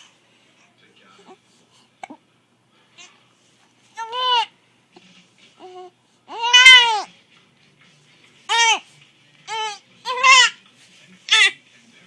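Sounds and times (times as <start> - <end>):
baby crying: 4.0 - 4.5, 5.6 - 7.1, 8.5 - 8.8, 9.5 - 10.6.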